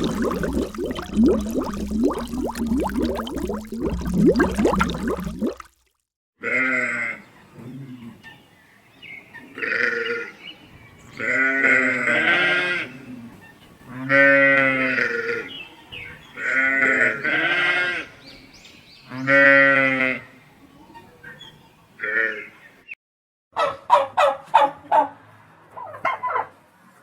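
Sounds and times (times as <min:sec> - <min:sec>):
livestock bleating: 0:06.4 - 0:07.2, 0:09.6 - 0:10.3, 0:11.2 - 0:12.9, 0:13.9 - 0:15.5, 0:16.4 - 0:18.1, 0:19.1 - 0:20.2.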